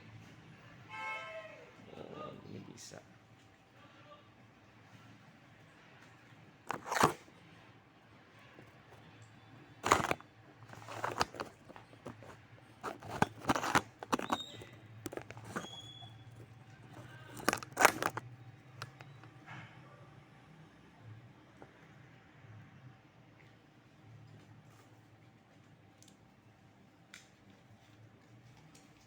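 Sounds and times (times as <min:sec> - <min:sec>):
belt rustling and buckle clicking: 0:06.7 - 0:07.2, 0:09.8 - 0:18.2
brief high squeaks: 0:14.1 - 0:14.8, 0:15.4 - 0:17.3.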